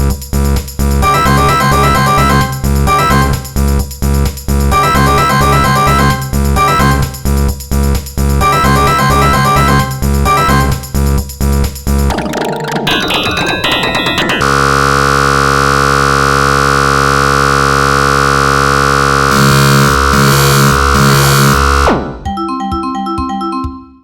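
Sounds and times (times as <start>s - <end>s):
synthesized ringtone music: 1.0s - 3.4s, 4.7s - 7.1s, 8.4s - 10.8s, 12.1s - 15.1s, 22.2s - 24.0s.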